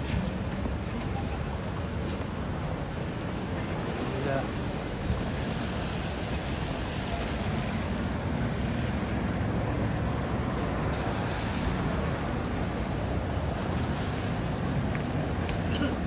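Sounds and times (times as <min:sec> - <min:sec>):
low rumble of passing vehicles: 0:00.0 - 0:16.0
traffic on wet streets: 0:00.0 - 0:16.0
rain hiss: 0:03.8 - 0:08.4.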